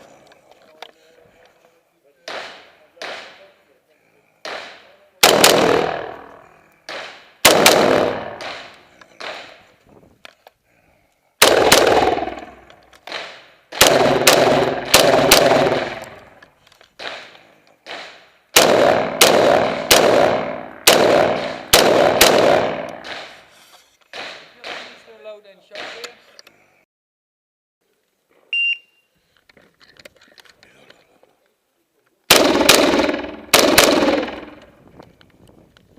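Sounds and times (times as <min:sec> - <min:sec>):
rifle shots echoing: 0:02.2 - 0:03.6, 0:04.4 - 0:09.7, 0:11.4 - 0:16.4, 0:17.0 - 0:23.5, 0:32.3 - 0:34.7.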